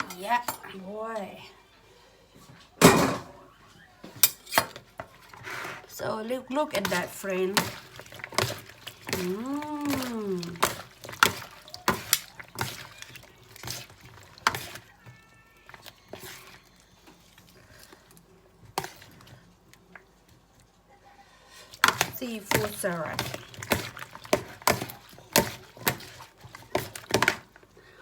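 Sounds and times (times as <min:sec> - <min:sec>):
utensils clinking against dish: 0:04.1 - 0:05.5, 0:06.8 - 0:14.9.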